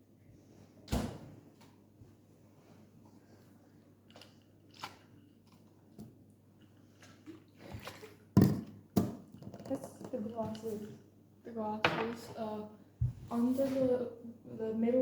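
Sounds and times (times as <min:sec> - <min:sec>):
kitchen objects clicking and knocking: 0:11.8 - 0:12.4.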